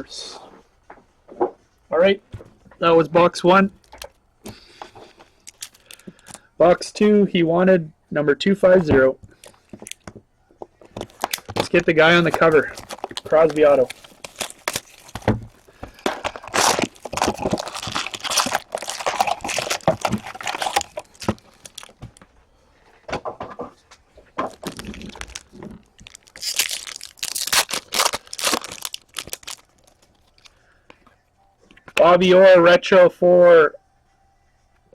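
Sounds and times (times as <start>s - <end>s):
foil wrappers tearing and crinkling: 11.0s - 22.1s, 24.5s - 30.5s.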